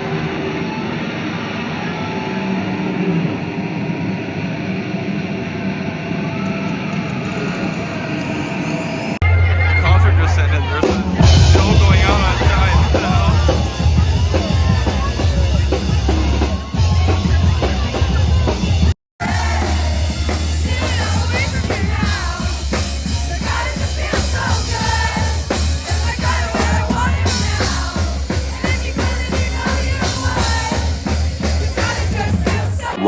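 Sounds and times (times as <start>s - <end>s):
booming bass: 9.2s - 33.0s
live band music: 9.2s - 33.0s
heavy drum kit: 9.4s - 33.0s.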